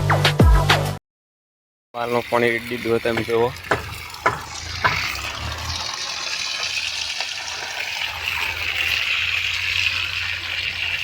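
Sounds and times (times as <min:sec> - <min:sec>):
water gushing into sand: 0:02.0 - 0:11.0
short knocks: 0:03.1 - 0:05.3.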